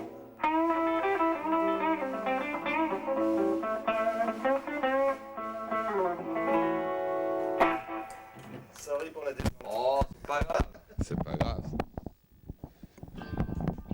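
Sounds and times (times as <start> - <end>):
electric guitar lead: 0.0 - 8.8.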